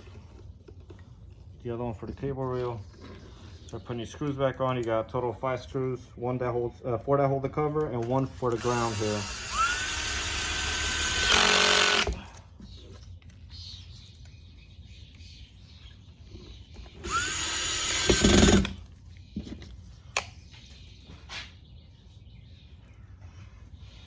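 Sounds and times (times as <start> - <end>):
power screwdriver whining: 8.3 - 12.2, 17.0 - 18.8.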